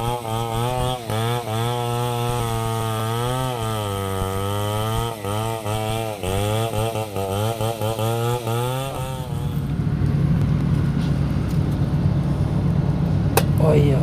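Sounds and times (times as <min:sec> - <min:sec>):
chainsaw idling roughly: 0:00.0 - 0:09.7
chainsaw cutting log: 0:00.0 - 0:09.8.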